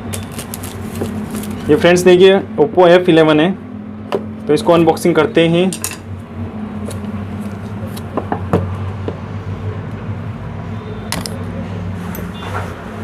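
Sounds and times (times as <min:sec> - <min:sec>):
packaging crackle: 0:00.0 - 0:01.8.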